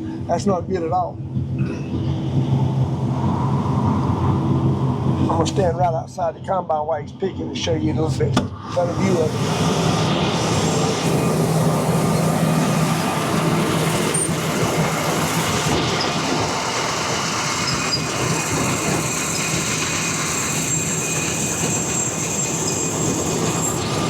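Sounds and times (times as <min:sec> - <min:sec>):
high machinery whine: 0:07.2 - 0:24.0
combine harvester running: 0:08.6 - 0:24.0.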